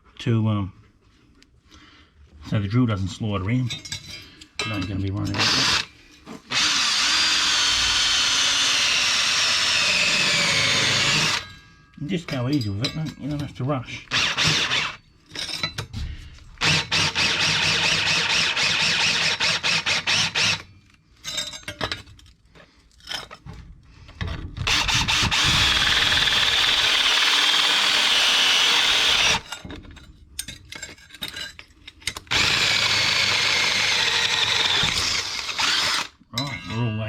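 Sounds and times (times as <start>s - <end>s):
power drill boring through steel: 5.3s - 5.9s, 6.5s - 11.5s, 14.1s - 15.0s, 16.6s - 20.7s, 24.6s - 29.5s, 32.3s - 36.2s.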